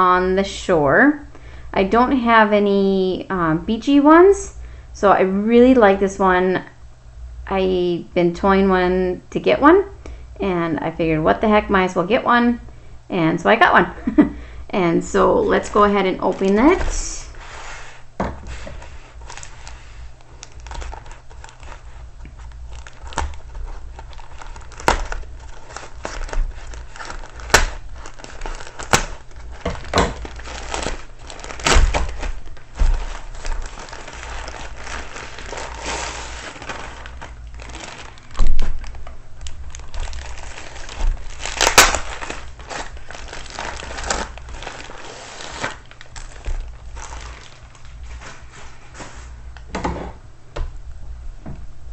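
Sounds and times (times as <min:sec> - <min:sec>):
packaging crinkling and rustling: 0:15.2 - 0:49.4.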